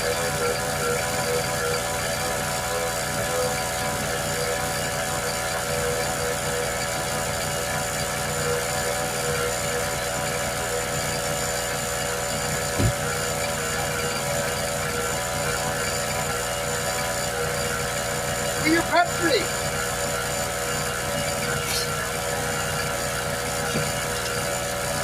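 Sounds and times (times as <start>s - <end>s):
motor running with whine: 0.0s - 25.0s
short knock: 12.8s - 13.1s.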